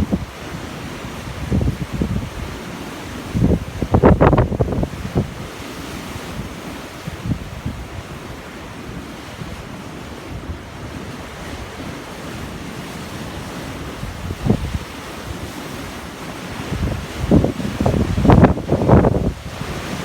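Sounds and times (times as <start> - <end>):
wind buffeting microphone: 0.0 - 5.6, 6.2 - 8.5, 12.6 - 15.9, 16.5 - 20.0
rough surf waves washing in: 0.0 - 20.0.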